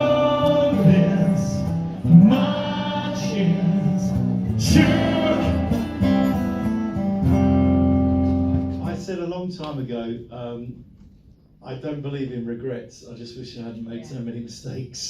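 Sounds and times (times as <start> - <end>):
person singing pop song: 0.0 - 6.2
guitar: 0.0 - 9.8.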